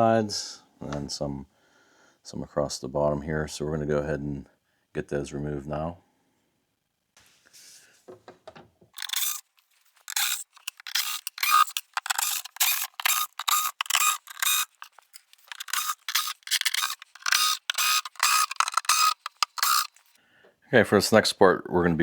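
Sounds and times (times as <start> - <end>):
ratchet clicking: 9.0 - 20.2.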